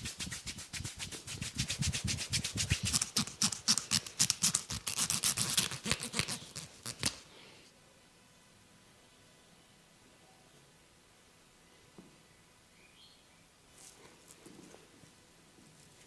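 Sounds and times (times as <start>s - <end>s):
comb scratching through hair: 0.0s - 7.2s.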